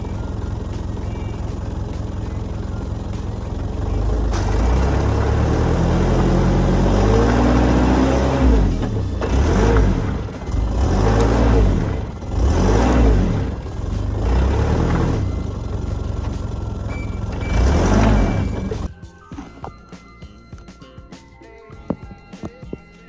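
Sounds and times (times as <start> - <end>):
car engine revving hard: 3.6 - 18.9.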